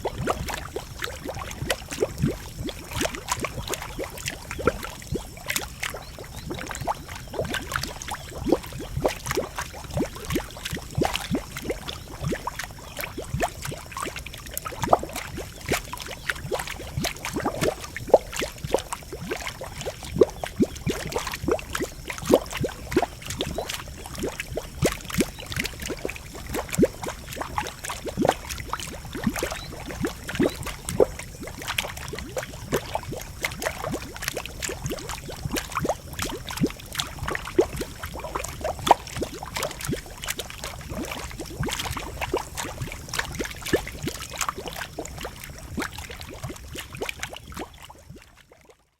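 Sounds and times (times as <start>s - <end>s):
pool bubbling and gurgling: 0.0s - 48.9s.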